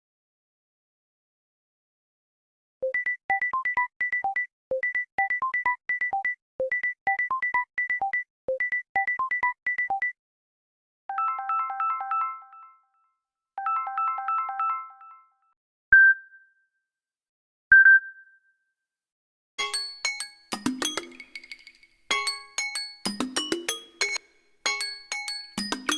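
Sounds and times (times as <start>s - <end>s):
bell-like dings: 19.6s - 25.9s
stacked chiming tones: 19.6s - 25.9s
synthesized beeping ringtone melody: 22.2s - 25.9s.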